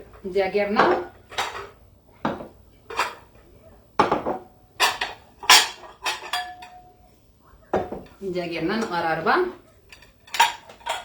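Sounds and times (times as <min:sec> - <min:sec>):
pots and pans clattering: 0:00.0 - 0:03.4, 0:04.0 - 0:07.0, 0:07.7 - 0:11.0.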